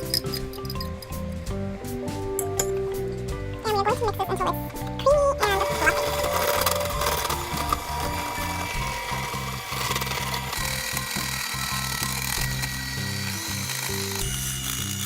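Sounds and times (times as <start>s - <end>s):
background music: 0.0s - 15.0s
electric mixer running: 5.4s - 15.0s.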